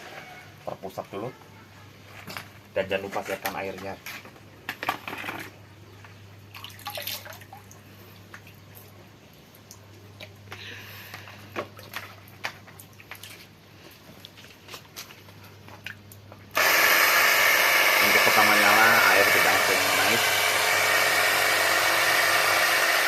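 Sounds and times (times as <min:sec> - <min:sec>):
water splashing and dripping: 0:06.5 - 0:10.4.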